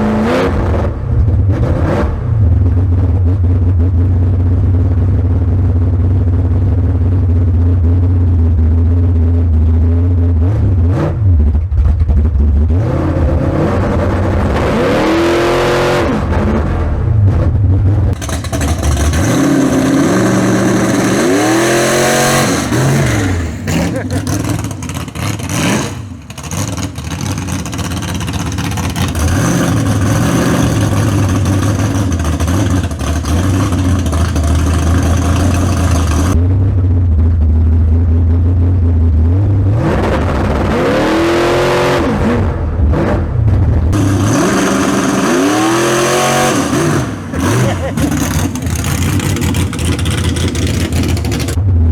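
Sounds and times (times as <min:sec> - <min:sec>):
race car engine revving: 0:10.4 - 0:36.4, 0:39.4 - 0:51.6.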